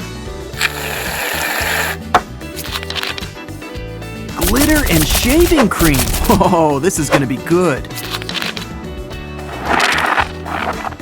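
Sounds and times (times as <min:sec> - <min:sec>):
hiss: 0:00.6 - 0:02.0.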